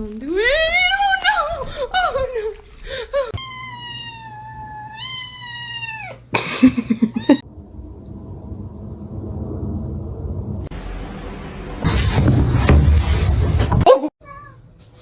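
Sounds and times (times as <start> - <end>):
cat meowing: 3.4 - 6.2.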